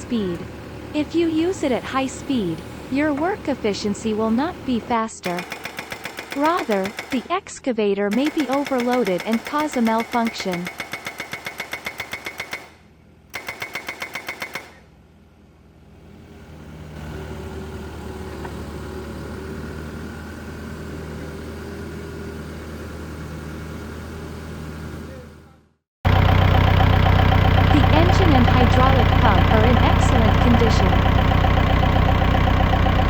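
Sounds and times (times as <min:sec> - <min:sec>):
excavator diesel engine running: 0:00.0 - 0:10.6, 0:15.1 - 0:25.3, 0:26.1 - 0:33.0
hydraulic breaker hammering: 0:05.2 - 0:07.3, 0:08.1 - 0:14.8.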